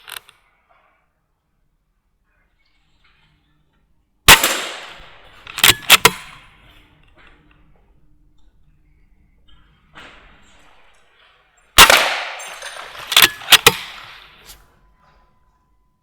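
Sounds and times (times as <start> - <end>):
sharp metallic clicks: 0.0 - 0.3, 4.3 - 6.5, 11.8 - 14.6
air rifle shot crack: 4.3 - 6.5, 11.8 - 14.6.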